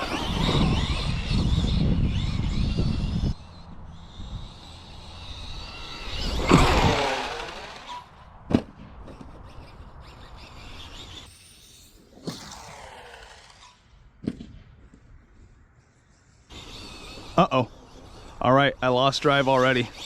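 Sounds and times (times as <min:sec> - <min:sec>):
rc truck motor whining: 0:00.0 - 0:08.2, 0:09.0 - 0:13.9, 0:16.5 - 0:20.0.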